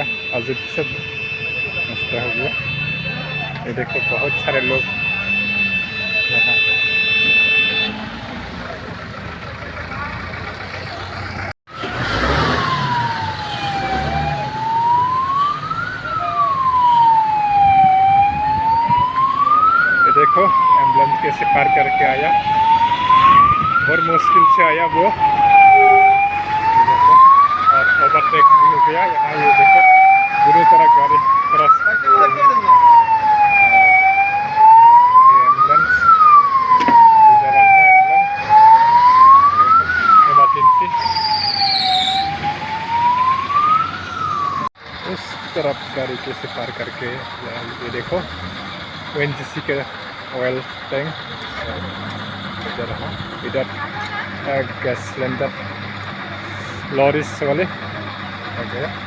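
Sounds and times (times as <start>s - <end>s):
ambulance siren wailing: 0.0s - 9.0s, 11.4s - 48.4s, 49.1s - 59.0s
road traffic noise: 0.0s - 59.0s.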